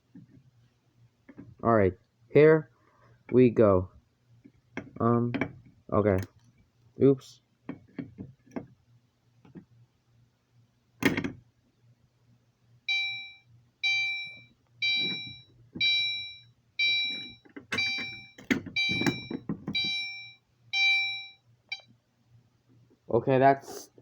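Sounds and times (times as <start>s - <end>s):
low knocks and handling noise: 0.0s - 0.6s, 1.2s - 1.6s, 4.4s - 6.7s, 7.6s - 8.8s, 9.4s - 9.8s, 11.0s - 11.5s, 16.8s - 20.0s
fire alarm chime dings: 12.9s - 21.9s.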